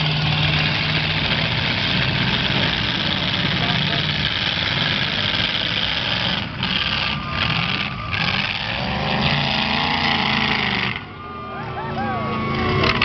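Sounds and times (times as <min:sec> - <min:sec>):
car engines roaring: 0:00.0 - 0:13.0.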